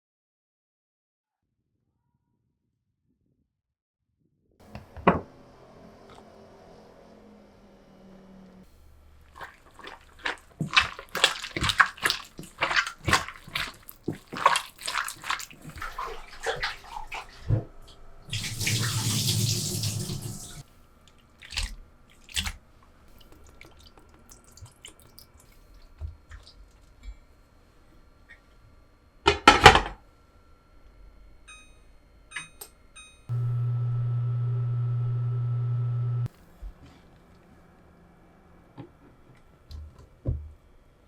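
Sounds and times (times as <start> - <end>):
tap running: 18.3 - 20.6.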